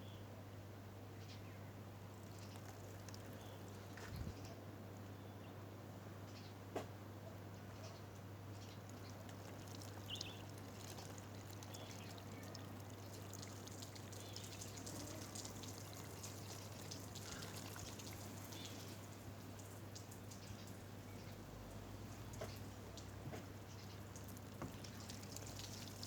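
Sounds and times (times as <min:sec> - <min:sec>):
water dripping: 0:02.1 - 0:04.1, 0:08.8 - 0:26.0
water pouring into radiator: 0:02.2 - 0:04.0, 0:08.9 - 0:26.0.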